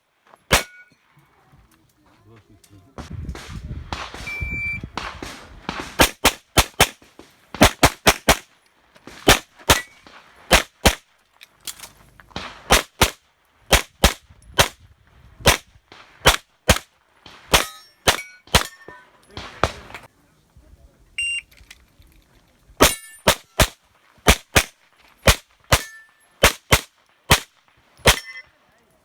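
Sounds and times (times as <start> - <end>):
handgun shots: 0.5 - 0.8, 22.8 - 24.7, 25.3 - 28.3
steel targets ringing: 0.5 - 1.0, 17.6 - 19.2, 22.8 - 23.6, 25.7 - 26.4, 28.0 - 28.6.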